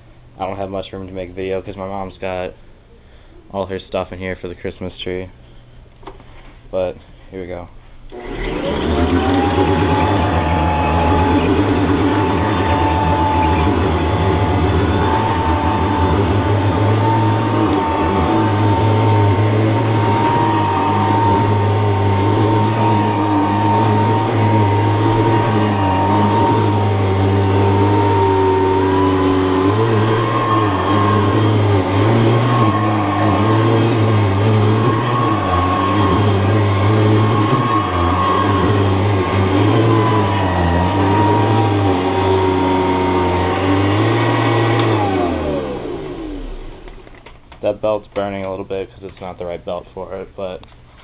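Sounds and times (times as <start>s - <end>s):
vacuum cleaner motor hum: 8.1s - 47.6s.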